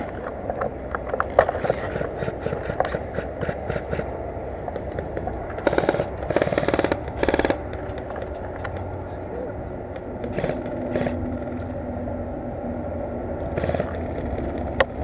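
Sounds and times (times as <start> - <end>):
airsoft gun full-auto burst: 1.6 - 4.1, 4.9 - 8.3, 10.2 - 11.6, 13.4 - 15.0
clicks and rustling: 4.7 - 8.9.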